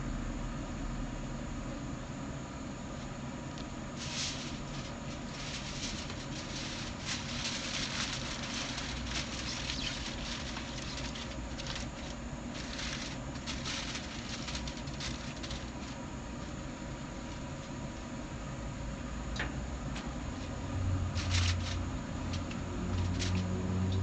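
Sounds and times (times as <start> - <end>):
steady low hum: 0.0 - 24.0
aluminium foil crinkling: 4.0 - 17.8, 21.1 - 24.0.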